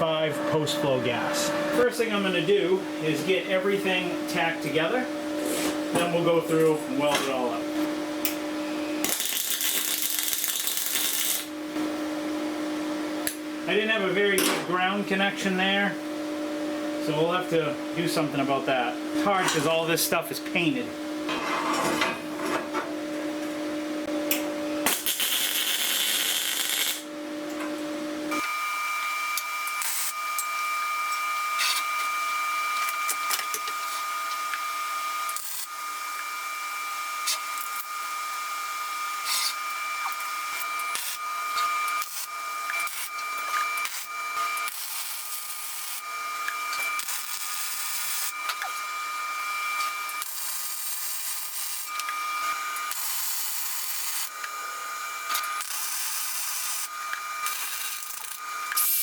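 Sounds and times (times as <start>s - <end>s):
machine hum: 0.0s - 19.2s.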